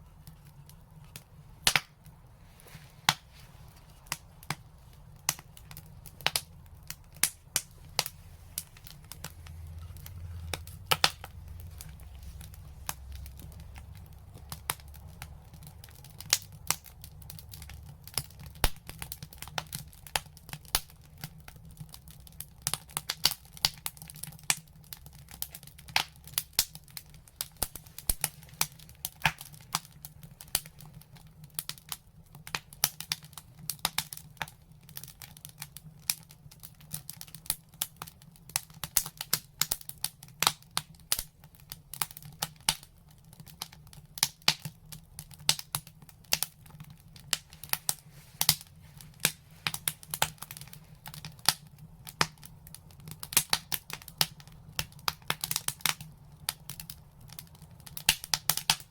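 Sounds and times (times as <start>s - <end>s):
faint low rumble: 0.0s - 18.8s
fire crackling and popping: 0.0s - 58.9s.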